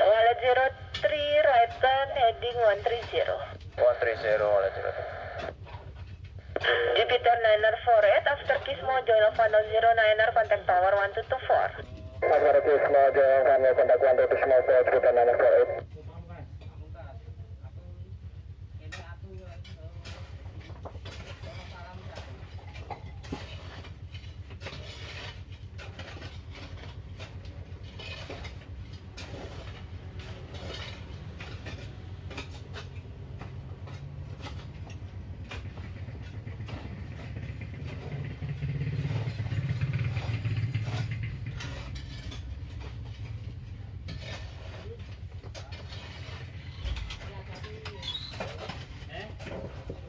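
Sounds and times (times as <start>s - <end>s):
steady low rumble: 0.0s - 5.6s.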